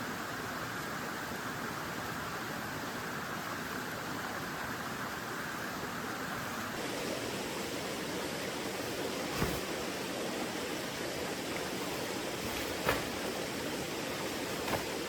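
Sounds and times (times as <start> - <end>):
mountain stream rushing: 0.0 - 15.0.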